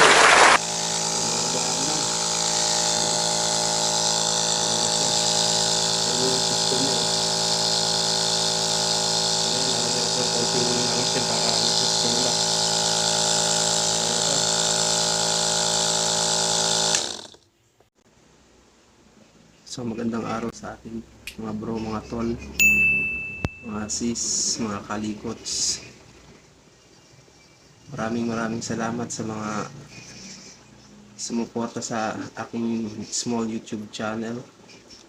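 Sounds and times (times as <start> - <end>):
compressor humming: 0.0 - 17.4, 22.6 - 26.3.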